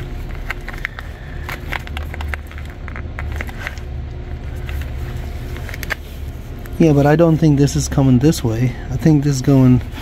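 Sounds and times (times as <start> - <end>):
low background rumble: 0.0 - 10.0
wiring harness clicks and crackles: 0.2 - 3.9.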